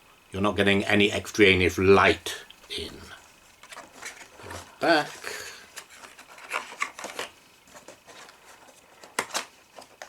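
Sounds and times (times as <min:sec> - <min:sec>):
cardboard rubbing and rustling: 0:03.5 - 0:05.2, 0:05.8 - 0:10.0.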